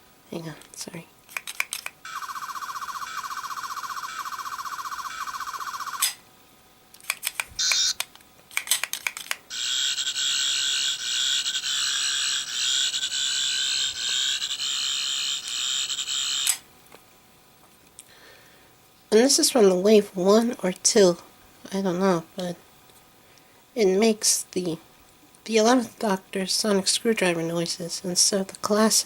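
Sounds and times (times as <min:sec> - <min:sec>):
toy clicks: 0:01.3 - 0:06.2, 0:06.9 - 0:16.6
electronic buzz: 0:02.0 - 0:06.2, 0:07.6 - 0:08.0, 0:09.5 - 0:16.7
warbling electronic whir: 0:02.1 - 0:06.2, 0:07.5 - 0:08.0, 0:09.5 - 0:16.6.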